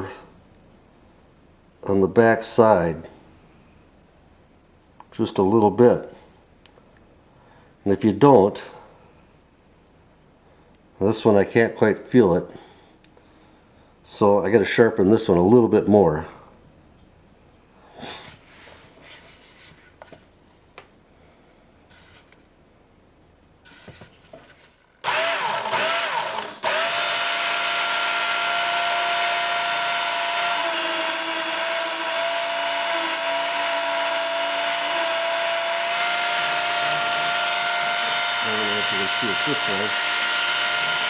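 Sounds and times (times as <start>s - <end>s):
abrasive belt whirring: 25.0s - 41.0s
belt sharpener motor whining: 25.0s - 41.0s.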